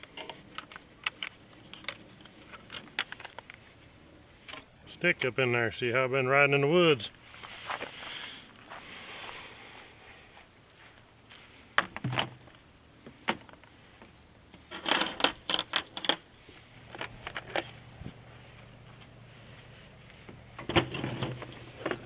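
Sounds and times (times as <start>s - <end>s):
tools and plastic parts clicking: 0.0s - 3.6s.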